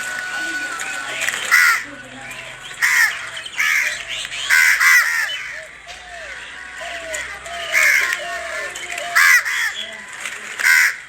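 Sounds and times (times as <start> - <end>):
soft bird chirps: 0.0 - 10.1
birds calling: 0.0 - 11.0.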